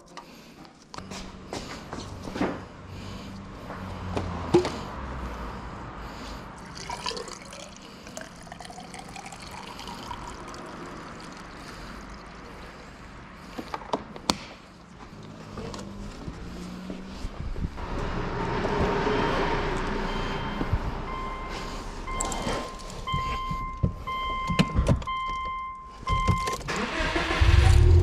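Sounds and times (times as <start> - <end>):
oil pouring in a trickling stream: 6.6 - 12.4.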